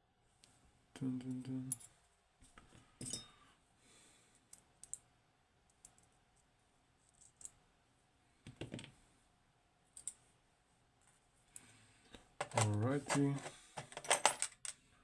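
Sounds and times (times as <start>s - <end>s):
small clicks of lock parts: 4.5s - 5.1s, 12.4s - 14.8s.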